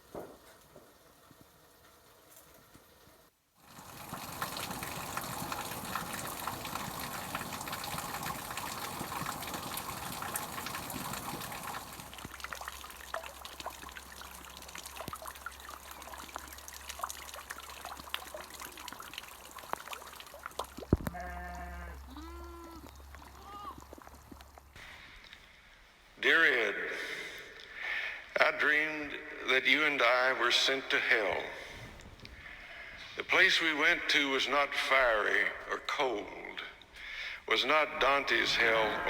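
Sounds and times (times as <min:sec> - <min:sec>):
water running and splashing: 0:00.0 - 0:24.8
dripping ticks: 0:03.6 - 0:25.4.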